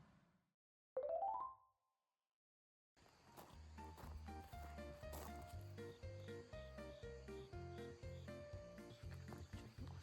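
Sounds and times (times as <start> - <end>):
background music melody over bass: 4.1 - 10.0.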